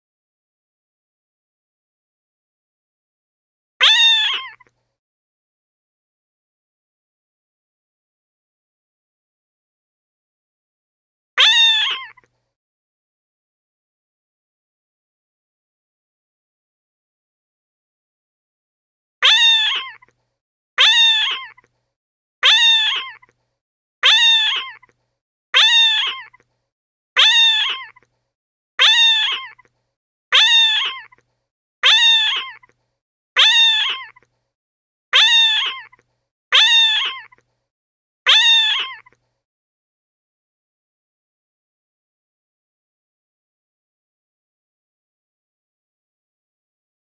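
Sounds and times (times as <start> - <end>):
cat meowing: 3.8 - 4.7, 11.4 - 12.3, 19.2 - 20.1, 20.8 - 21.7, 22.4 - 23.3, 24.0 - 24.9, 25.6 - 26.4, 27.2 - 28.1, 28.8 - 29.7, 30.3 - 31.2, 31.8 - 32.7, 33.4 - 34.3, 35.2 - 36.0, 36.6 - 37.4, 38.3 - 39.2.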